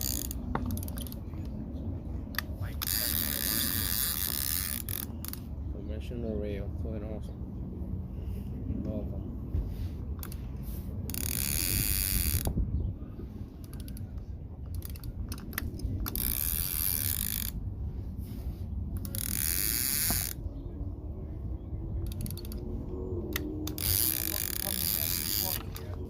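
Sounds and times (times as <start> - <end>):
ratchet clicking rapidly: 0.0 - 1.2, 2.3 - 5.5, 11.1 - 12.5, 14.7 - 17.6, 19.0 - 20.4, 22.0 - 22.6, 23.6 - 26.0
steady low rumble: 0.0 - 26.0.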